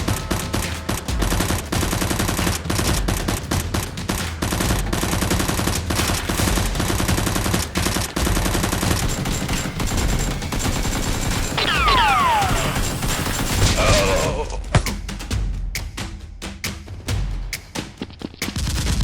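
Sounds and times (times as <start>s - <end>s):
automatic gunfire: 0.0s - 14.4s.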